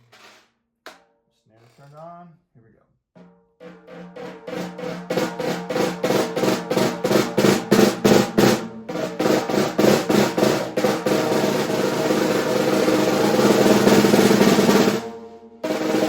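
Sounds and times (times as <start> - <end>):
snare drum strokes and roll: 3.6 - 16.0.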